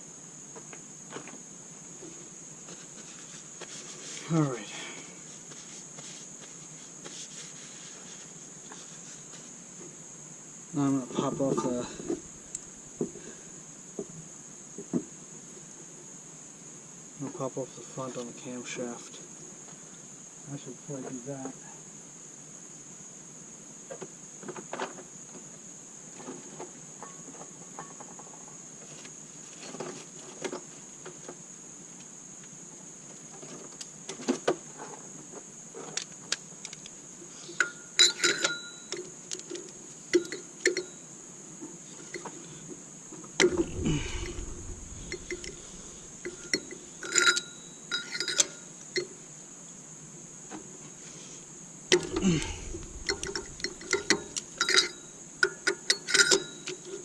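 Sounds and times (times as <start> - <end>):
steady high whine: 11.2 - 13.3, 43.4 - 47.0, 51.9 - 54.9
dull bumps: 43.4 - 46.5
metal tools clinking: 52.0 - 55.0.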